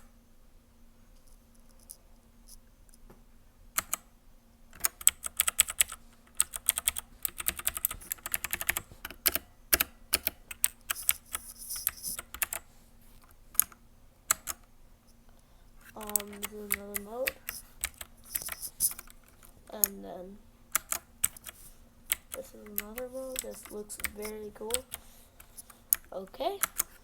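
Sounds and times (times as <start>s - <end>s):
clicky mechanical keyboard keystrokes: 3.8s - 4.0s, 4.8s - 12.6s, 13.6s - 14.6s, 16.0s - 20.0s, 20.7s - 27.0s.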